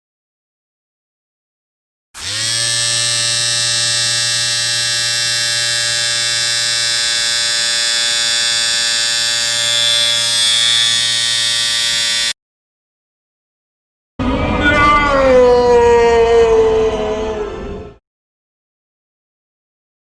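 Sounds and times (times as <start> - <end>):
harsh buzzing tone: 2.2 - 12.4.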